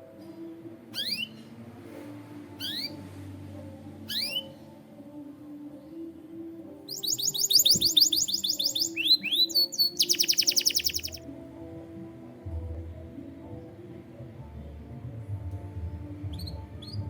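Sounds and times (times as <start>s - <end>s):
canary singing: 0.9s - 1.4s, 2.6s - 3.1s, 4.0s - 4.7s, 6.8s - 11.2s.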